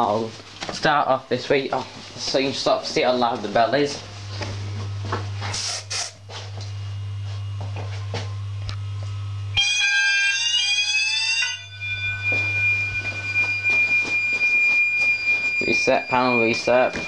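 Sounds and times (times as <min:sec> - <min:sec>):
steady low hum: 0:00.0 - 0:17.0
fire alarm sounder tone: 0:09.4 - 0:17.0.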